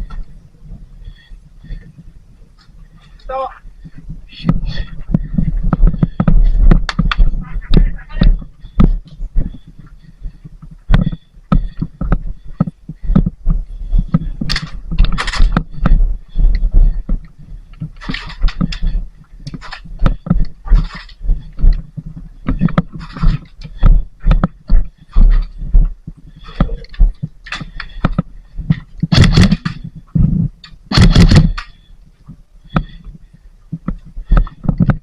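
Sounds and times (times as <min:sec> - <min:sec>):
heavy low rumble: 0:03.6 - 0:31.6
thumps and scrapes: 0:10.6 - 0:31.8, 0:33.7 - 0:35.0.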